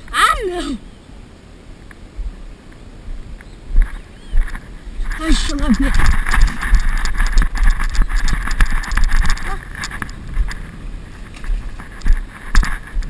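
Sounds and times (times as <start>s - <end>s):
wind buffeting microphone: 1.1s - 13.0s
clicks and rustles: 3.4s - 13.0s.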